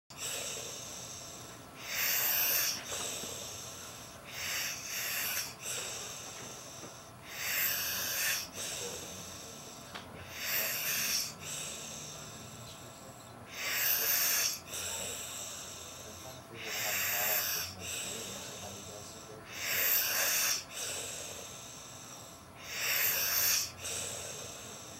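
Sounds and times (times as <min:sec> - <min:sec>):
man snoring: 0:00.1 - 0:24.9
quiet breathing: 0:00.1 - 0:24.9.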